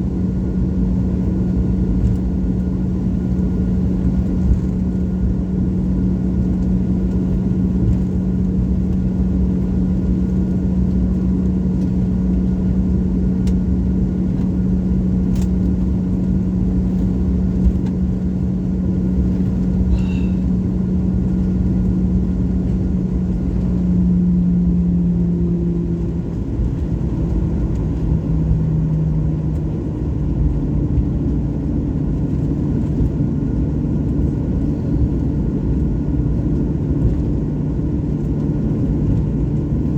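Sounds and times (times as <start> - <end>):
jet engines rumbling: 13.8 - 39.9.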